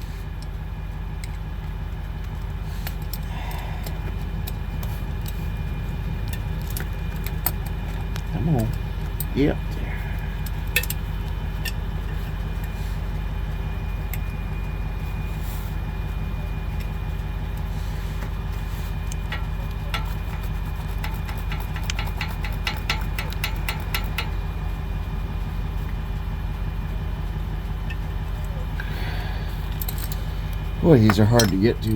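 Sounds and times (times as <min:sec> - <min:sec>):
truck engine idling: 0:00.0 - 0:31.9
metallic clicks of hand tools: 0:19.1 - 0:24.3.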